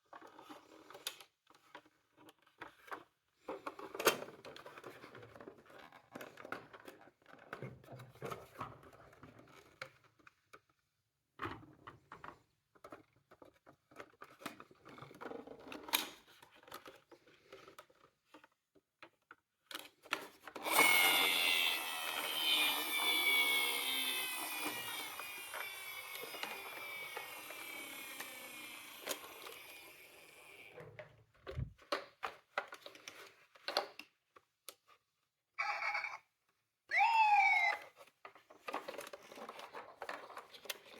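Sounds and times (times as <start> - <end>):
toy cars clicking and rattling: 19.7 - 30.8, 38.3 - 40.9
whirring with falling pitch: 20.6 - 30.7.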